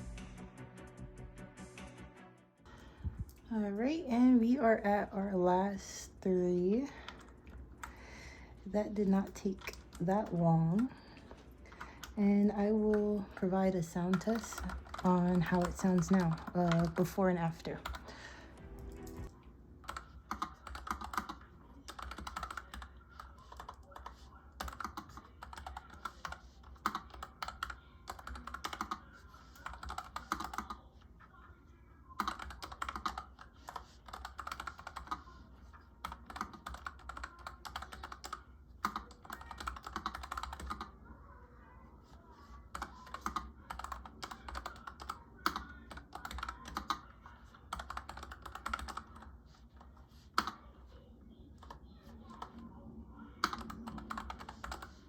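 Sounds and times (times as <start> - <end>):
mechanical keyboard typing: 12.9 - 18.0, 18.8 - 30.8, 32.2 - 35.3, 36.0 - 40.9, 42.7 - 47.1, 47.7 - 49.3, 53.4 - 55.0.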